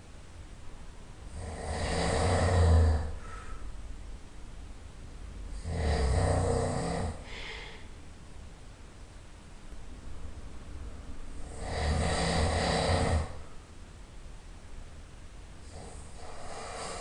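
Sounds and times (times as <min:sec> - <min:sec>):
man snoring loudly: 0:01.3 - 0:03.2, 0:05.6 - 0:07.3, 0:11.4 - 0:13.4, 0:15.7 - 0:17.0.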